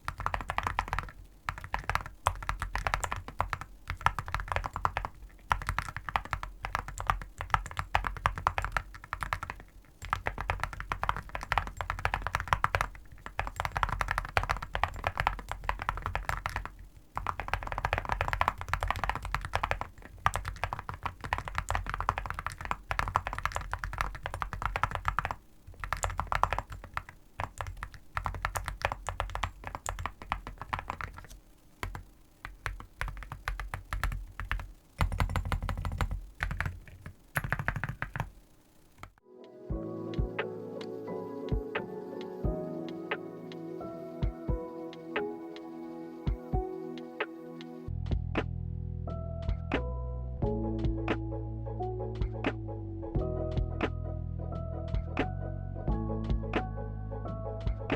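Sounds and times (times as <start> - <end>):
mechanical keyboard typing: 0.0 - 39.2.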